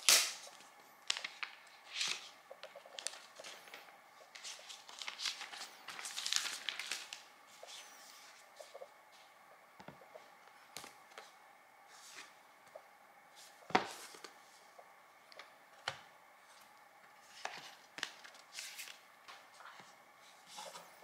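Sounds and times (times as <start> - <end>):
packaging rustling: 0.2 - 7.8.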